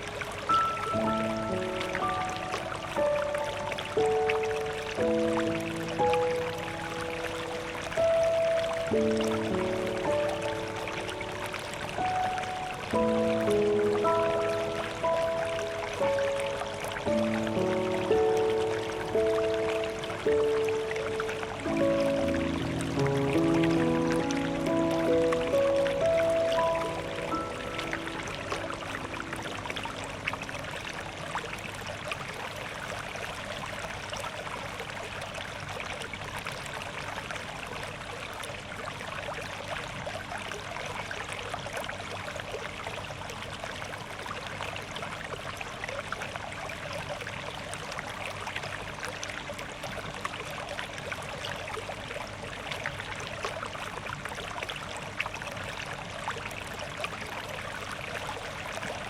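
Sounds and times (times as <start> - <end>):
piano melody: 0.0 - 32.7
trickling water: 0.0 - 59.0.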